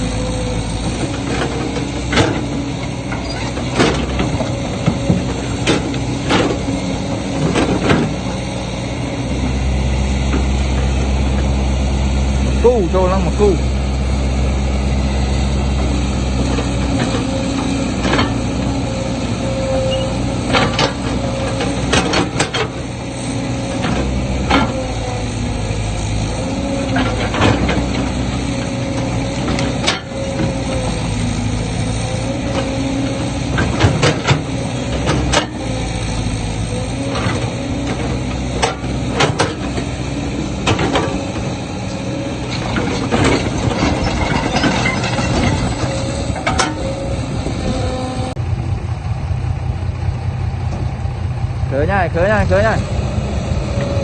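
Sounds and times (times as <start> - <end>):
heavy machinery diesel engine: 0.0 - 54.0
metallic clanks and knocks: 20.4 - 22.8, 42.5 - 47.0.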